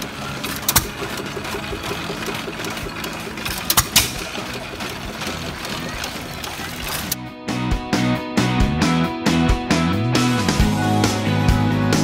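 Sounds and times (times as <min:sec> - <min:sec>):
water pump clattering: 0:00.0 - 0:07.2.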